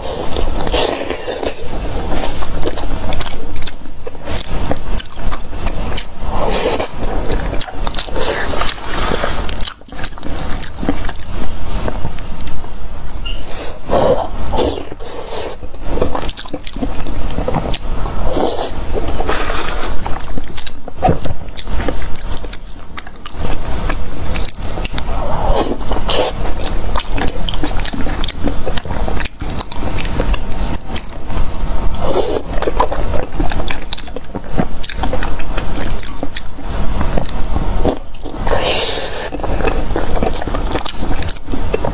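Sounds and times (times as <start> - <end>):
chewing and biting: 0.0 - 41.9.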